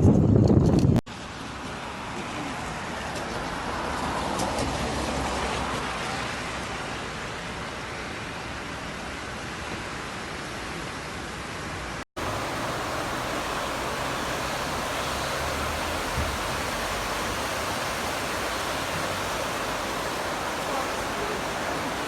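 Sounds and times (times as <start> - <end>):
floodwater rushing: 12.2 - 22.0.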